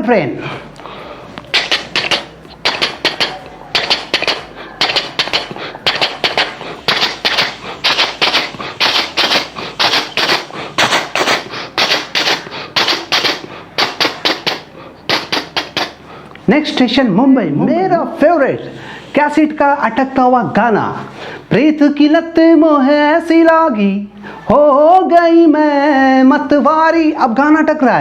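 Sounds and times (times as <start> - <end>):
person imitating train wheels clacking: 1.5 - 16.0.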